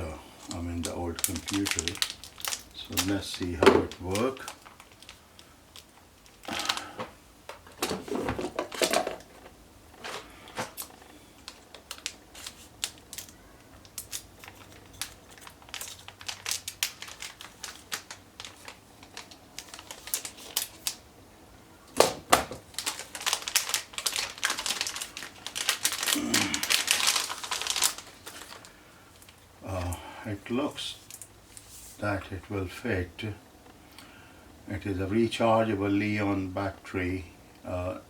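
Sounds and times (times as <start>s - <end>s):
rustling and clattering: 6.3s - 20.9s.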